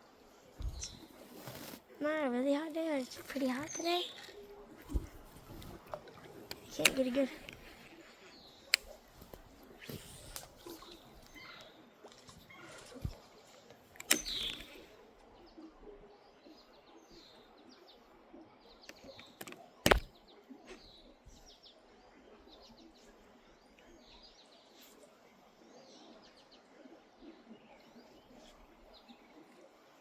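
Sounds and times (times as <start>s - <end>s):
small birds chirping: 0.0s - 30.0s
sharp clicks: 3.2s - 8.0s, 14.0s - 14.9s, 18.9s - 20.1s.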